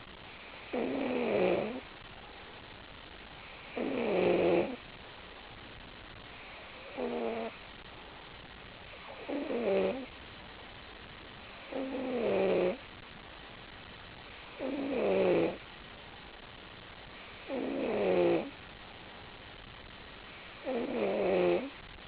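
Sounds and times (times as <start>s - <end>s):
person snoring: 0.7s - 1.8s, 3.7s - 4.8s, 6.8s - 7.6s, 9.1s - 10.1s, 11.7s - 12.8s, 14.6s - 15.6s, 17.4s - 18.5s, 20.6s - 21.8s.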